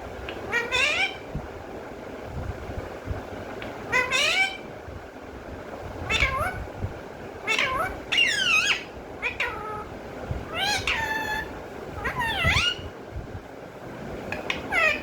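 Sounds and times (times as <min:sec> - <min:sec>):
parrot calling: 0:00.5 - 0:01.3, 0:03.9 - 0:04.7, 0:06.1 - 0:06.7, 0:07.4 - 0:13.0, 0:14.3 - 0:15.0.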